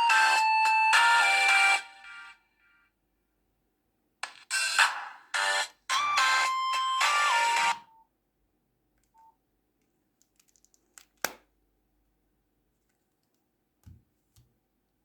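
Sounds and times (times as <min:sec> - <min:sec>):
small clicks: 0:09.8 - 0:11.4.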